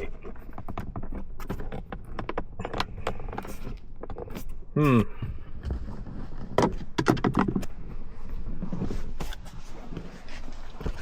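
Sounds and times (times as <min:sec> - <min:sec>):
hard plastic clicks and knocks: 0:06.6 - 0:07.7.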